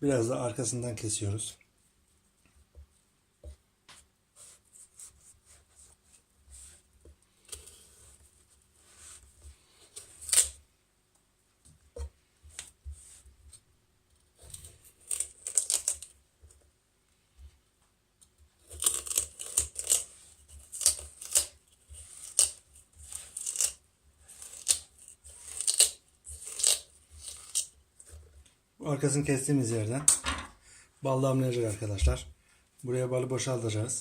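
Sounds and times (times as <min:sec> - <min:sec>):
knife cutting and scraping radish: 0:04.3 - 0:10.7, 0:12.0 - 0:16.2, 0:18.3 - 0:29.4.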